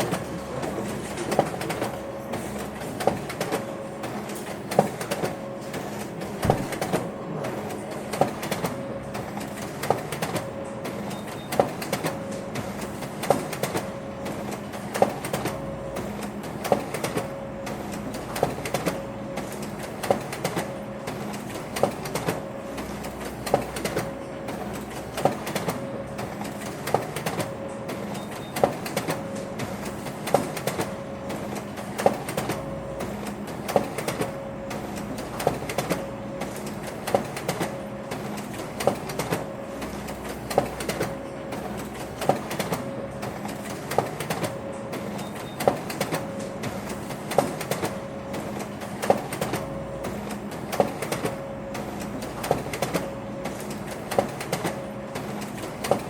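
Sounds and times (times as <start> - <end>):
printer running with clicks: 0.0 - 56.0
printer knocks: 6.3 - 7.1.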